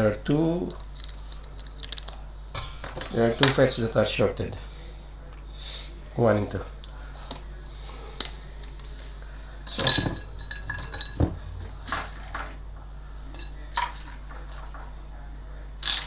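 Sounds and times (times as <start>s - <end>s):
steady low hum: 0.0s - 15.8s
metal tools clinking and rattling: 9.7s - 12.6s, 13.3s - 14.8s
knocks on workbench: 10.2s - 12.6s.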